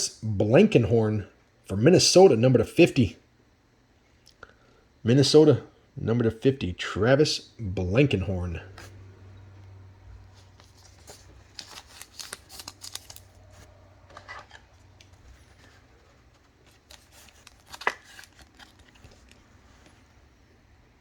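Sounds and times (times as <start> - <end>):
cards sliding and rustling: 10.3 - 20.2.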